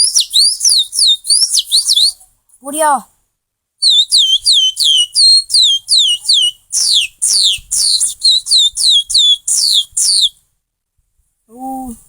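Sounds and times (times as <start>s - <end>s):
boy whistling bird song: 0.0s - 2.2s, 3.8s - 10.4s.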